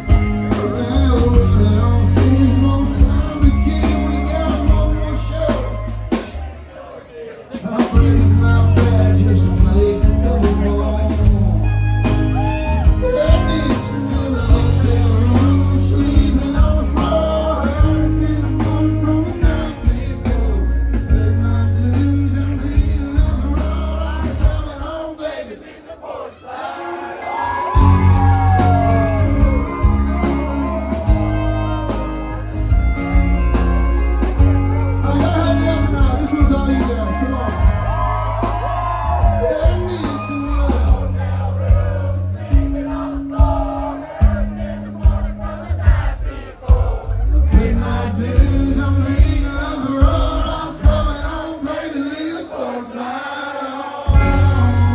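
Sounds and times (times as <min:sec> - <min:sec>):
person singing: 0:00.0 - 0:05.9, 0:07.5 - 0:25.0, 0:34.2 - 0:46.0, 0:46.7 - 0:54.9
live band playing: 0:00.0 - 0:06.8, 0:07.6 - 0:25.1, 0:26.8 - 0:51.8, 0:54.1 - 0:54.9.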